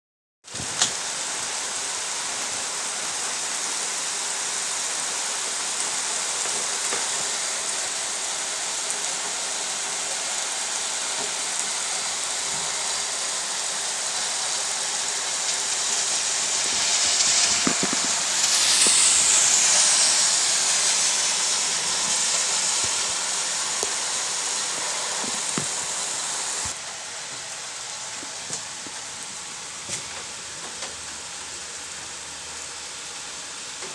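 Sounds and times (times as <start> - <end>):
rain hissing: 0.4 - 33.9
vehicle swishing on wet road: 11.3 - 26.8
raindrop ticks: 16.6 - 19.1.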